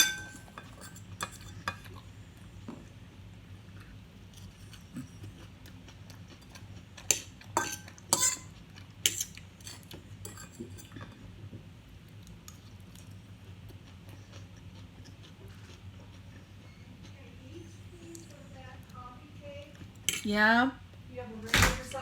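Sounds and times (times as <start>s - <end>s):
cutlery clinking against a plate: 0.0s - 2.0s, 6.4s - 11.2s, 20.1s - 20.3s
low steady hum: 0.0s - 22.0s.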